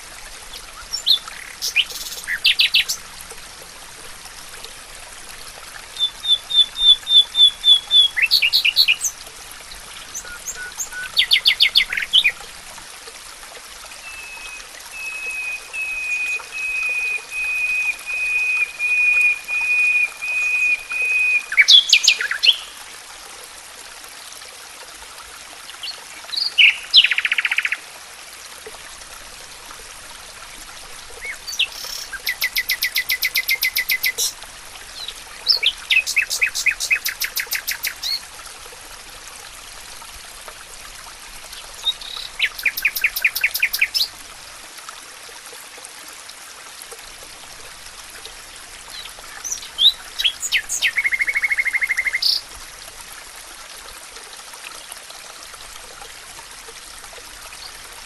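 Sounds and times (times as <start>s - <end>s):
bird chirps and trills: 0.5s - 3.0s, 6.0s - 9.2s, 10.1s - 12.3s, 31.2s - 34.4s, 35.0s - 38.2s, 41.8s - 44.1s, 48.9s - 52.4s
songbirds singing: 0.5s - 3.0s, 6.0s - 9.2s, 10.0s - 12.4s, 31.2s - 38.2s, 41.6s - 44.1s, 48.9s - 52.4s.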